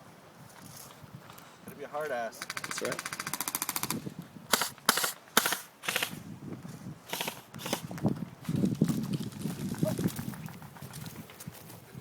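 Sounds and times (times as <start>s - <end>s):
airsoft guns firing: 2.4s - 6.2s, 7.1s - 7.8s.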